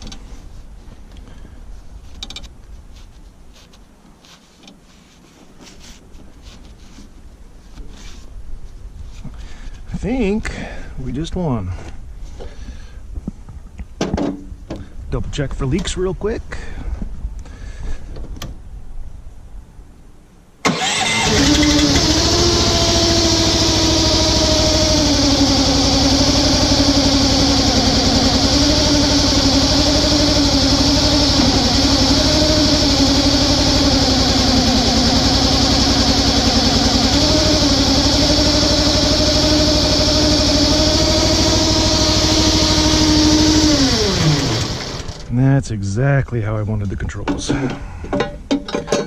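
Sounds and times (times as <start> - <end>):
track loader engine running: 20.6 - 45.4.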